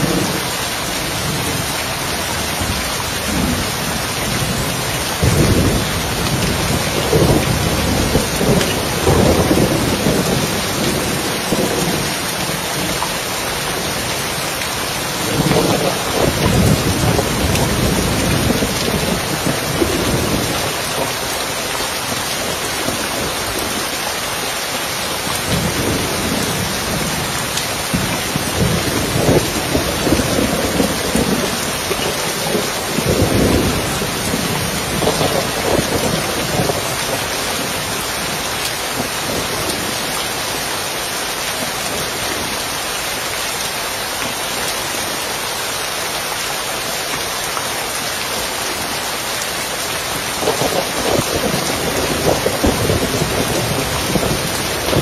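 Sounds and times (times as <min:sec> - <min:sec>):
rain pattering on a roof: 0:00.0 - 0:55.0
rolling thunder: 0:25.4 - 0:38.4, 0:50.4 - 0:55.0.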